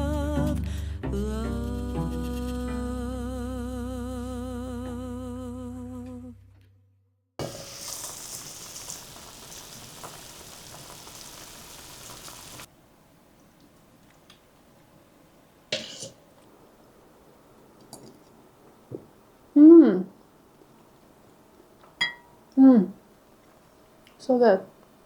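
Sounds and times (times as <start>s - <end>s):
person singing ballad: 0.0s - 6.4s
food sizzling in a hot pan: 7.4s - 12.7s, 15.7s - 16.3s.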